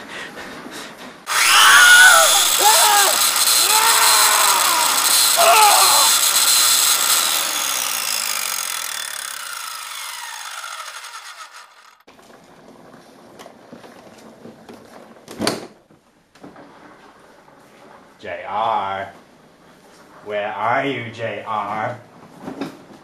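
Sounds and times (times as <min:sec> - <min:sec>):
power tool whirring: 0:01.3 - 0:12.1.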